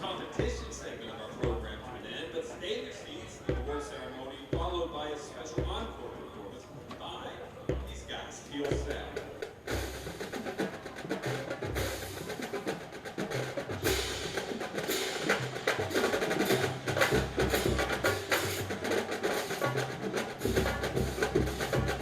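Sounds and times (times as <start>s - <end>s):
snare drum strokes: 7.7s - 22.0s.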